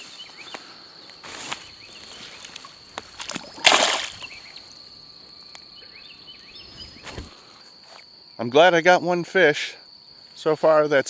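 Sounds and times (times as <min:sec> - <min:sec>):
high insect drone: 0:00.0 - 0:11.0
fish splashing into water: 0:03.0 - 0:04.4.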